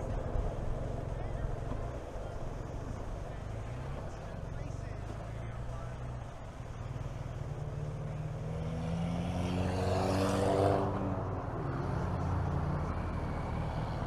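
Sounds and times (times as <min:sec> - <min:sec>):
motorcycle engine revving: 0:07.5 - 0:14.0.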